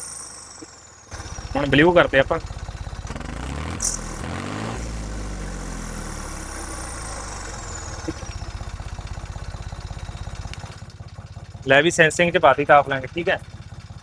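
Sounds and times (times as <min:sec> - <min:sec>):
tractor diesel engine: 0:00.0 - 0:14.0.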